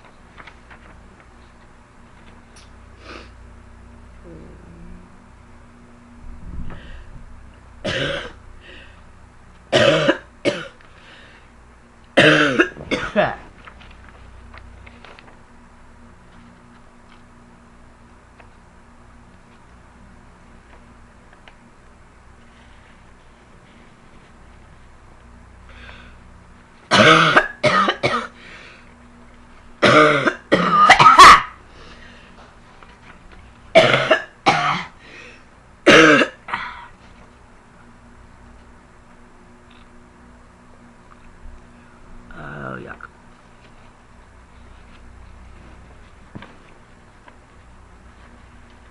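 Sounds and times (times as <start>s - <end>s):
girl breathing: 6.7s - 7.1s, 11.0s - 11.5s
girl coughing: 7.8s - 8.4s, 9.7s - 10.8s, 12.2s - 13.4s, 26.9s - 28.3s, 29.8s - 31.6s, 33.8s - 35.0s, 35.9s - 36.9s.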